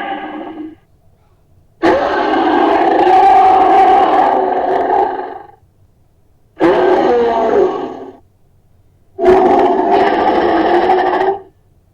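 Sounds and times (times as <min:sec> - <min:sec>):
elephant roaring: 0:00.0 - 0:00.8, 0:01.8 - 0:05.6, 0:06.6 - 0:08.2, 0:09.2 - 0:11.5.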